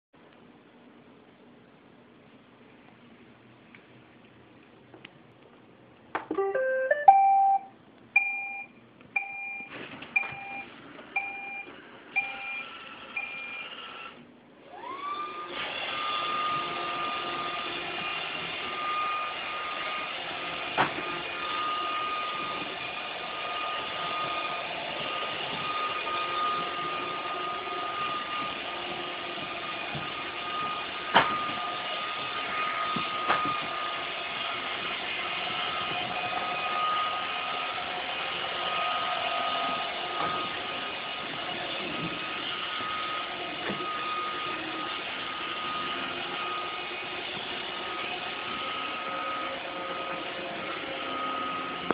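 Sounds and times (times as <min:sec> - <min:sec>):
short beeps: 0:06.3 - 0:10.6
robot vacuum motor whine: 0:12.6 - 0:51.9.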